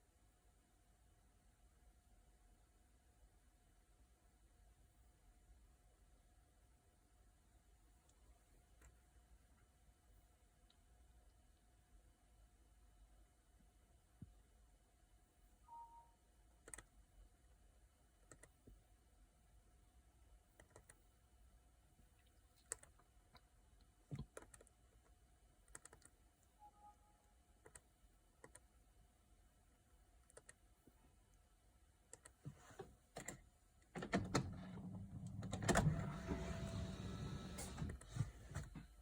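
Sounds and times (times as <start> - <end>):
short electronic beep: 15.7 - 16.2, 26.6 - 27.2
typing on a computer keyboard: 16.6 - 16.9, 18.2 - 18.6, 20.6 - 21.0, 24.1 - 24.7, 25.7 - 26.1, 28.4 - 28.6.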